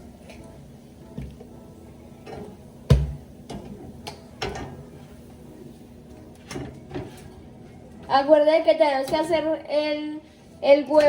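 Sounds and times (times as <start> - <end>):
utensils and dishes clattering: 2.2 - 5.0, 6.2 - 8.2.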